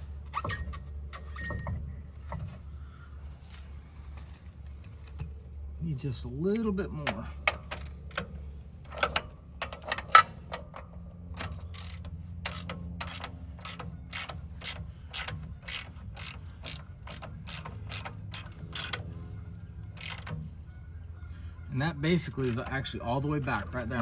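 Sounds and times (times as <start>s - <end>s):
socket ratchet clicking: 11.4s - 19.1s, 20.0s - 20.4s, 22.3s - 22.8s.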